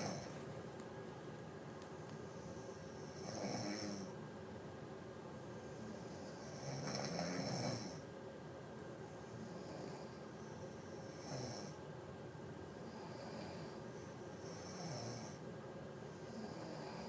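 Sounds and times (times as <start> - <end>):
woman snoring: 0.0 - 0.3, 3.1 - 4.1, 5.9 - 8.0, 11.1 - 11.8, 12.8 - 13.8, 14.4 - 15.4, 16.2 - 17.0.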